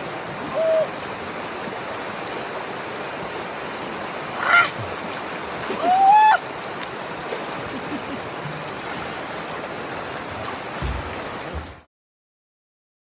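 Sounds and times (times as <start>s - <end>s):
low thump: 10.8s - 11.8s.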